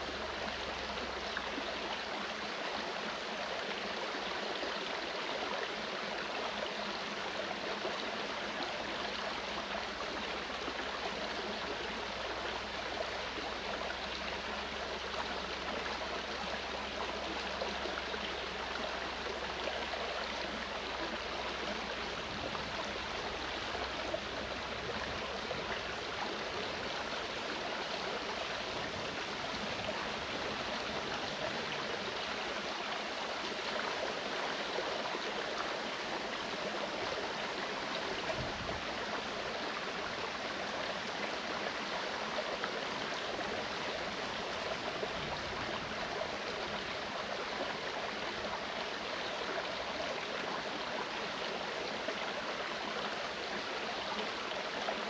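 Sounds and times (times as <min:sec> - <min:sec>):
stream water rushing: 0:00.0 - 0:55.0.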